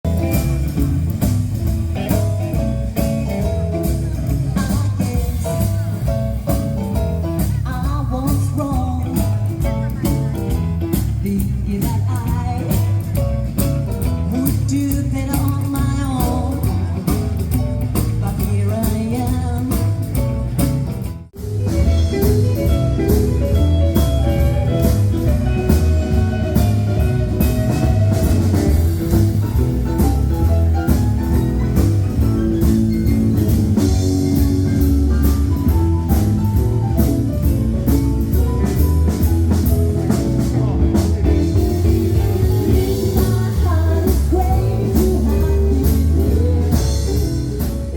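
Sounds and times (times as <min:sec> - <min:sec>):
blues band playing: 0:00.0 - 0:47.9
person singing: 0:03.0 - 0:06.2, 0:07.6 - 0:10.2, 0:14.2 - 0:20.8, 0:40.6 - 0:47.9.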